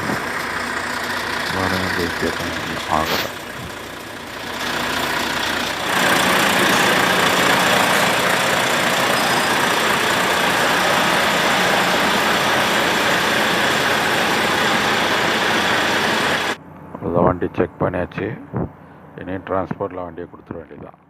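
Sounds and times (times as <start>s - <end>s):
diesel truck engine idling: 0.0s - 16.7s.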